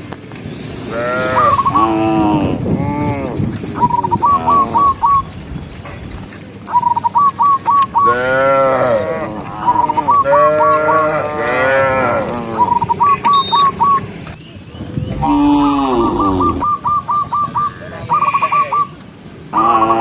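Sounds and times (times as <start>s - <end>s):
cattle mooing: 0.9s - 3.5s, 8.0s - 14.0s, 15.1s - 16.6s.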